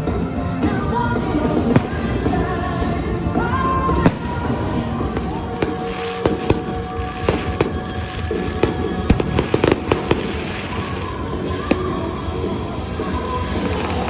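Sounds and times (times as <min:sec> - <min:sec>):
music with held tones: 0:00.0 - 0:14.0
sharp cracks: 0:01.3 - 0:03.2, 0:04.0 - 0:11.2.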